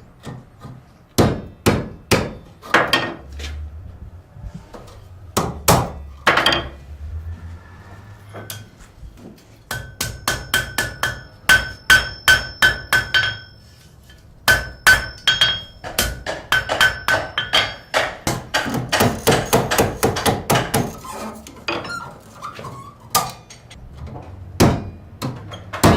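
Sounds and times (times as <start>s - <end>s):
hammer striking metal on anvil: 1.2s - 3.3s, 5.4s - 6.8s, 8.3s - 8.8s, 9.7s - 13.8s, 14.4s - 20.9s, 24.6s - 25.9s.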